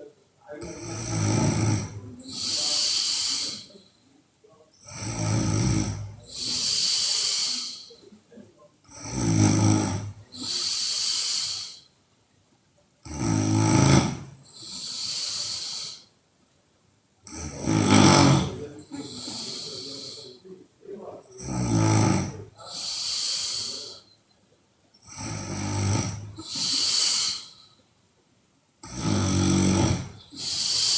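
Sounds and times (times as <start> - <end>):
woman snoring: 0.6 - 3.8, 4.8 - 7.9, 8.9 - 11.9, 13.0 - 16.1, 17.3 - 20.4, 21.4 - 24.0, 25.0 - 27.8, 28.8 - 30.9.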